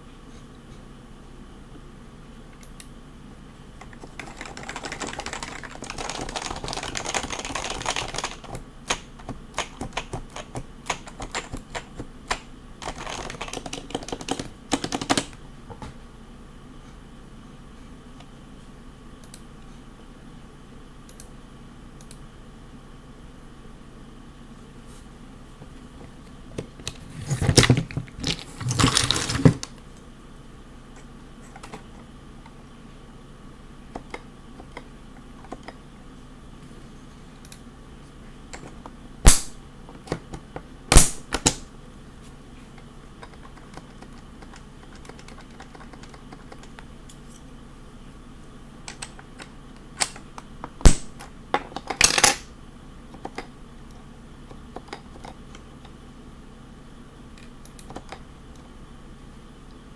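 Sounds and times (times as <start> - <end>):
loud keyboard clattering: 3.8 - 15.4, 26.6 - 29.7, 43.2 - 46.8.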